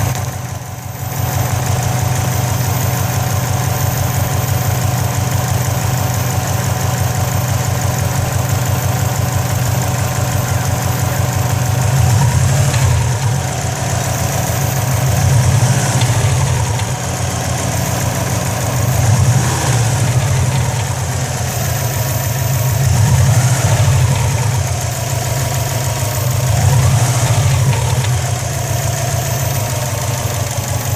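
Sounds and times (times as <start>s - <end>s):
engine rattle: 0.0s - 30.9s
car engine revving: 7.8s - 30.9s.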